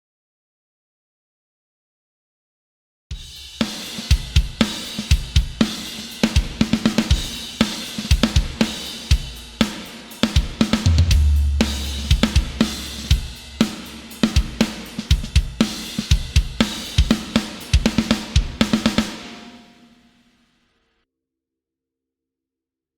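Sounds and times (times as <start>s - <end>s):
drum kit playing a groove: 3.1s - 19.8s
deep low boom: 10.9s - 13.4s.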